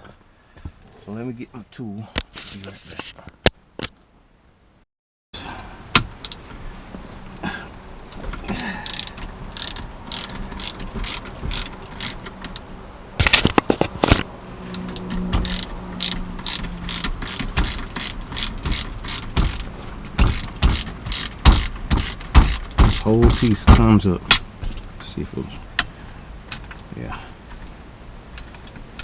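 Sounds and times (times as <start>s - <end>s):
low hum: 5.4s - 21.5s
ratcheting clicks: 8.8s - 12.6s, 14.7s - 23.7s.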